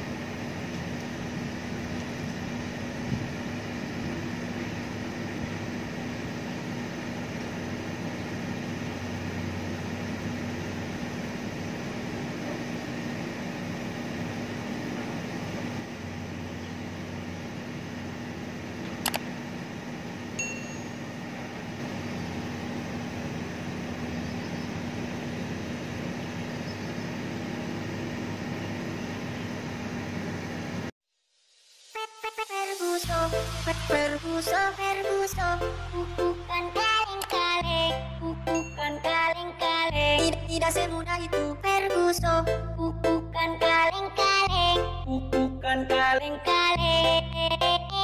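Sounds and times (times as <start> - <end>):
heavy diesel engine humming: 0.0 - 30.9, 33.0 - 48.0
sharp click: 18.8 - 19.3, 37.2 - 37.4
high ding: 20.4 - 21.0, 38.5 - 39.0.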